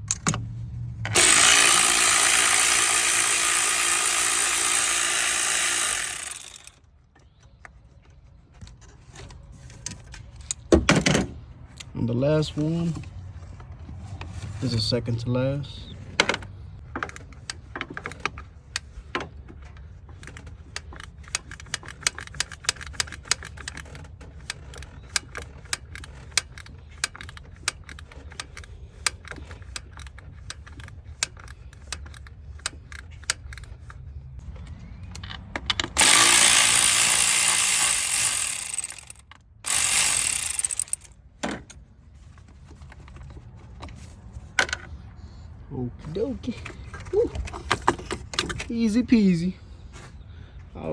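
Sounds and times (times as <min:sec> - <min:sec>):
ratchet wrench clicking: 0:01.1 - 0:06.8, 0:36.0 - 0:41.1.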